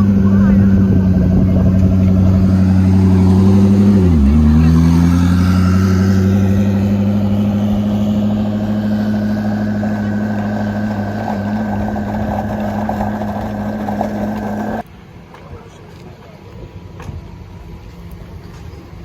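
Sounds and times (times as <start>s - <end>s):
car engine idling: 0.0s - 14.8s.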